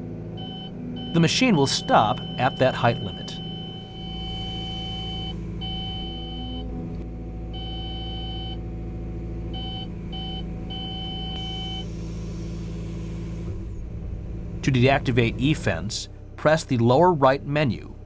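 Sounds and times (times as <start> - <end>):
diesel engine running: 0.0 - 18.0
warning tone beeping: 0.4 - 6.8, 7.5 - 8.6, 9.5 - 11.9.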